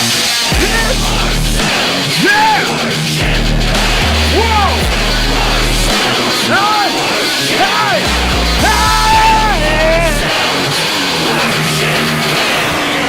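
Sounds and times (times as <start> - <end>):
distorted trap metal music: 0.0 - 13.0
high swooping melodic line: 0.5 - 7.2
heavy bass line: 0.5 - 10.4.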